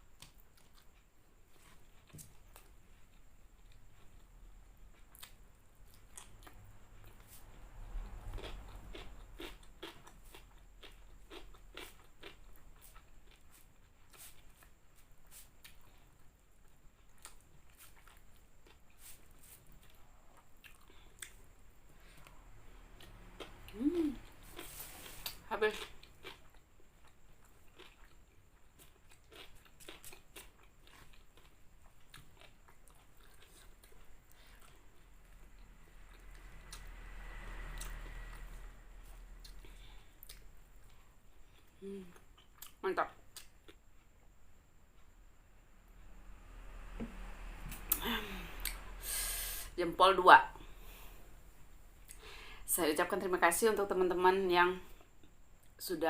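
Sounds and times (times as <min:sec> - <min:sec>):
crunching and chewing: 0:00.1 - 0:36.9, 0:39.3 - 0:45.2.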